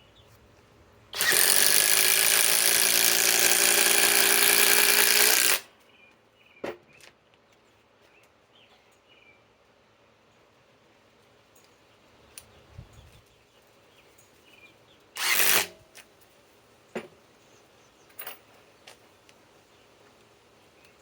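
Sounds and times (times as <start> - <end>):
impact driver burst: 1.2 - 5.7, 15.2 - 15.8
sharp clicks: 15.2 - 16.1.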